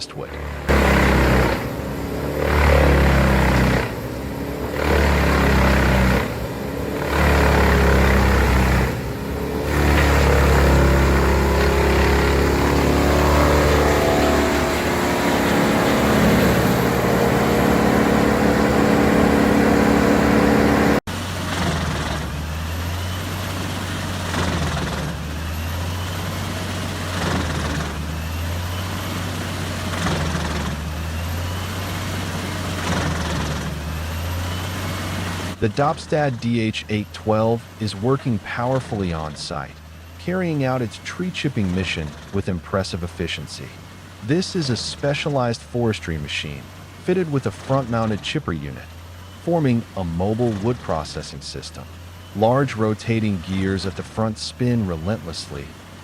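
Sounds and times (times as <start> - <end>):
pulsing machine drone: 0.0 - 56.0
wood chipper running: 0.0 - 56.0.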